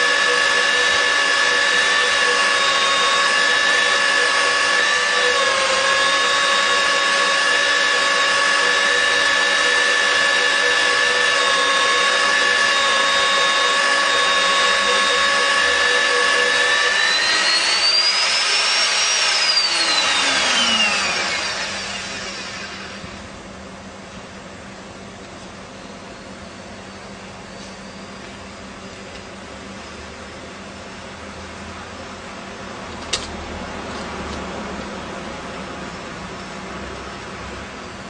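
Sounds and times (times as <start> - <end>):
drill cutting noise: 0.0 - 23.2
electric drill whining: 0.0 - 23.3.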